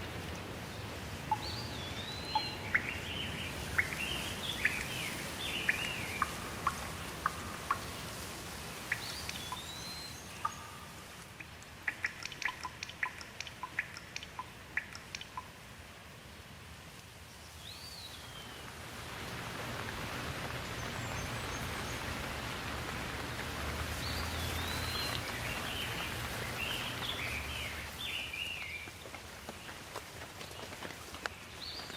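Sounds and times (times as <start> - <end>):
rain hiss: 0.0 - 31.9
water drops pattering: 2.3 - 15.6, 20.7 - 28.0.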